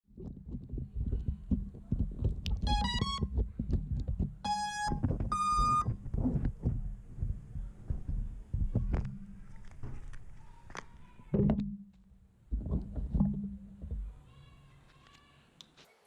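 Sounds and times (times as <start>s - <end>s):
handling knocks and bumps: 0.1s - 14.2s
drone motor beeps: 2.6s - 3.3s, 4.5s - 6.0s.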